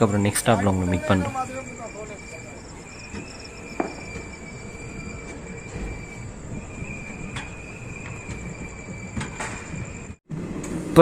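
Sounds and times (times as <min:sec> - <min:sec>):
train rumble and rattle: 0:00.0 - 0:11.0
thin high-pitched tone: 0:00.4 - 0:05.2.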